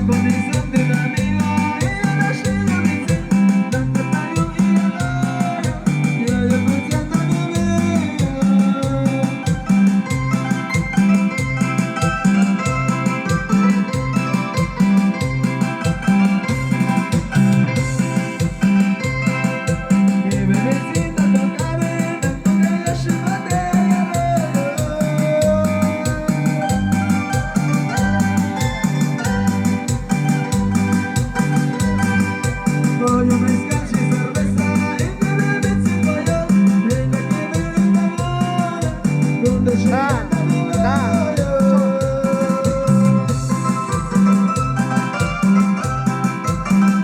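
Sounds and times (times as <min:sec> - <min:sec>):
sustained melody line: 0:00.0 - 0:42.1
band playing dance song: 0:00.0 - 0:47.0
fast shaker percussion: 0:00.0 - 0:47.0
steady bass beat: 0:00.0 - 0:47.0.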